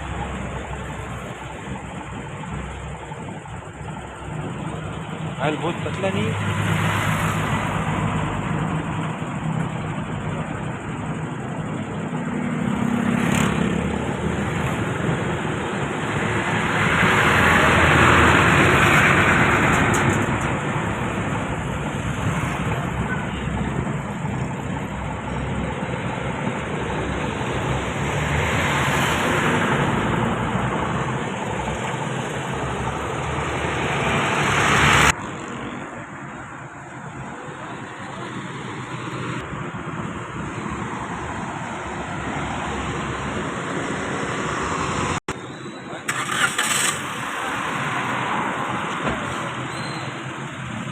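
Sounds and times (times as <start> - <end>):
motor vehicles passing: 4.6 - 36.1.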